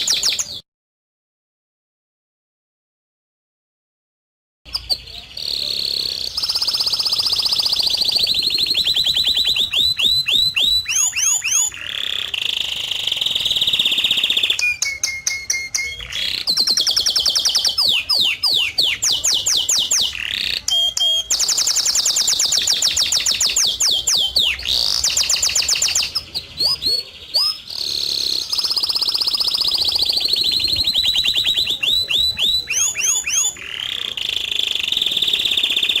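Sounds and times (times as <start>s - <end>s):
high chirping trills: 4.7s - 36.0s
held whistled tones: 13.2s - 17.1s.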